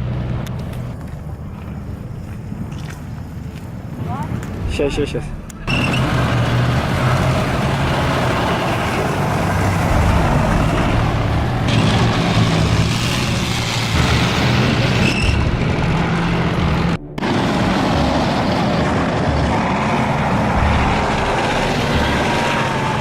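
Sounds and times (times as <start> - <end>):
vehicle engine humming: 0.0 - 23.0
loud rushing noise: 4.6 - 23.0.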